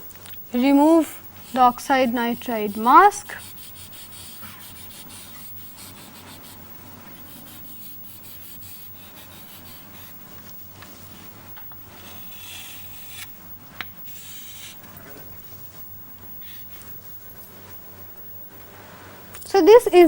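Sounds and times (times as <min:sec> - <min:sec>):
steady low hum: 0:00.0 - 0:20.0
pen scratching on paper: 0:00.6 - 0:13.4, 0:14.0 - 0:14.9.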